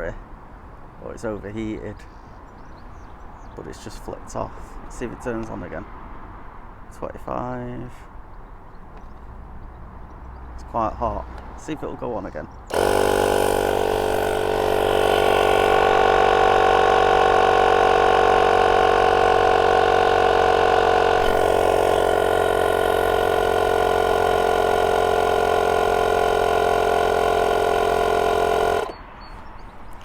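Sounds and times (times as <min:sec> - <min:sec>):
air compressor running: 0:12.7 - 0:29.0.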